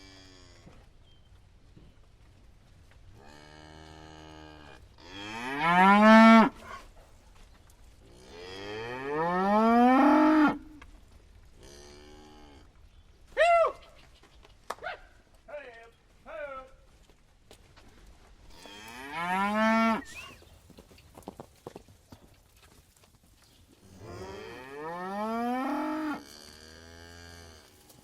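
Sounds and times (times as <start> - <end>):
cattle mooing: 3.2 - 6.6, 8.2 - 10.7, 18.6 - 20.2, 23.9 - 27.7.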